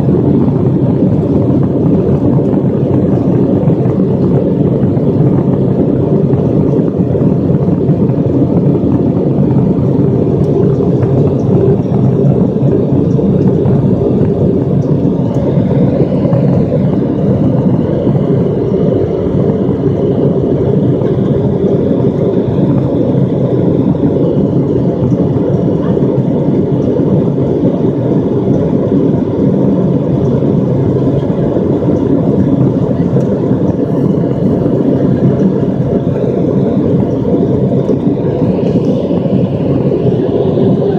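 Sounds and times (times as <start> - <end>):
jet engine and airflow in cabin: 0.0 - 40.9.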